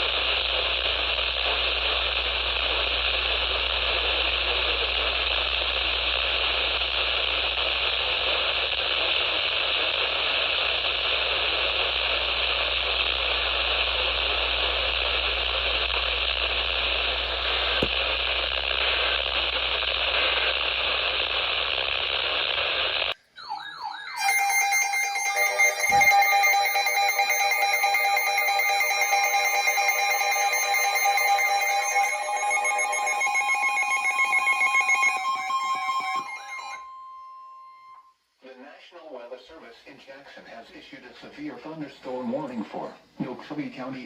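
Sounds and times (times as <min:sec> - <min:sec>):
radio static hiss: 0:00.0 - 0:23.2, 0:38.4 - 0:44.0.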